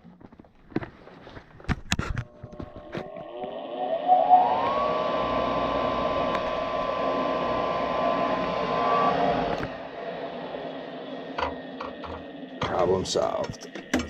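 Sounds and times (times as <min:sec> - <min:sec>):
small electric motor whining: 0:02.2 - 0:12.4.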